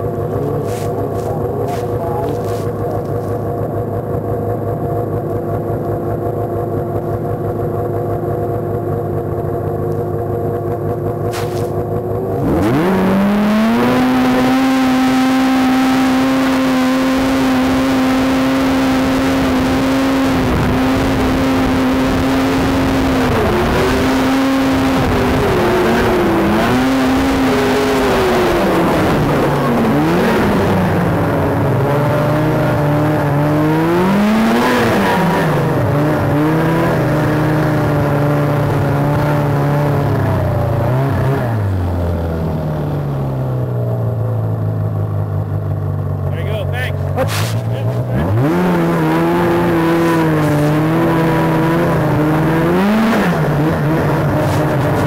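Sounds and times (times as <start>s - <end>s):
snowmobile engine revving: 0.0s - 4.3s, 11.1s - 43.8s, 46.3s - 55.0s.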